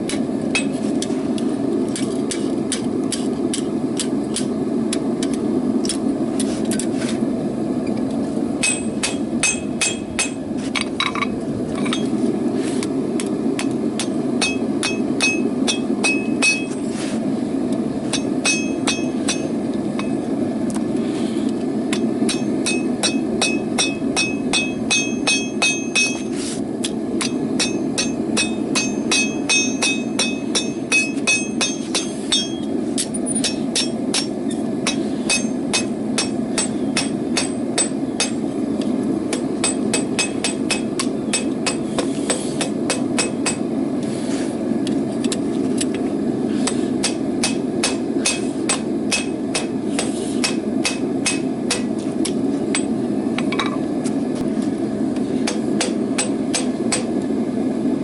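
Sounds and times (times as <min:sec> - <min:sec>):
hammer striking steel on anvil: 0:00.0 - 0:01.1, 0:08.6 - 0:12.1, 0:13.6 - 0:16.8, 0:18.1 - 0:20.2, 0:21.9 - 0:38.4, 0:39.3 - 0:43.7, 0:46.6 - 0:53.8, 0:55.4 - 0:57.2
anvil ringing: 0:08.6 - 0:10.4, 0:14.0 - 0:16.8, 0:18.2 - 0:20.2, 0:21.9 - 0:26.2, 0:27.2 - 0:32.7, 0:33.4 - 0:38.4.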